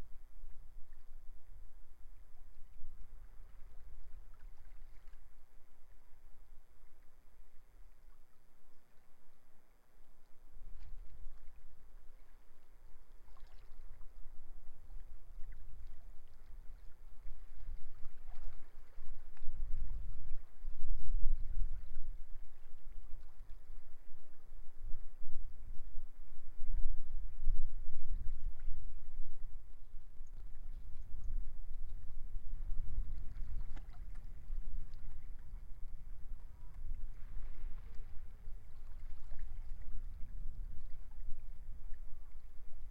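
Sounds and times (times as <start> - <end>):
faint sea wash: 0.0 - 42.9
wind buffeting microphone: 15.2 - 42.9.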